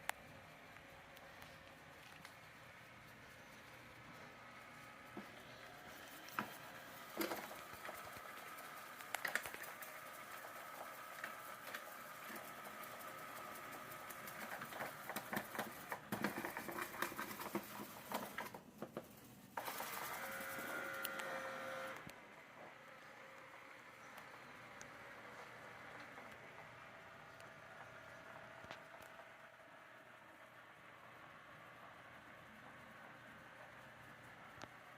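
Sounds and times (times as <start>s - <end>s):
robot vacuum motor humming: 0.0s - 18.5s, 19.6s - 31.3s.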